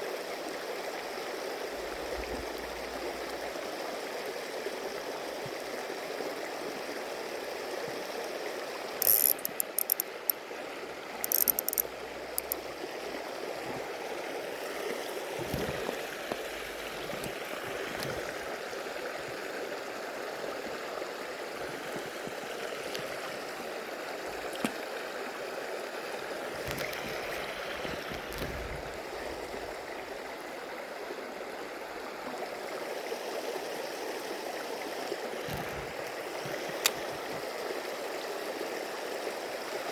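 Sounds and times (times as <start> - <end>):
stream water running: 0.0 - 39.9
rapid mechanical clicking: 9.0 - 10.4, 11.2 - 12.6.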